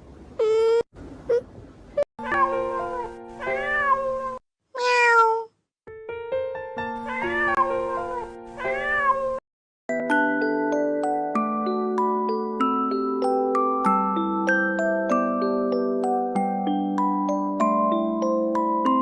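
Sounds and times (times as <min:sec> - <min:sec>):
cat meowing: 0:02.2 - 0:05.5, 0:07.0 - 0:09.4.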